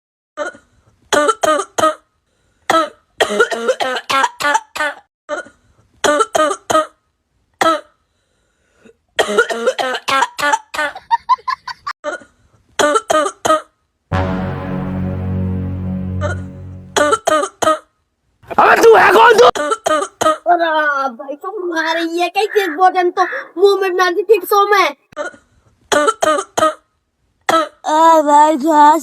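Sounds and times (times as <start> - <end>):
person coughing: 2.7 - 5.4.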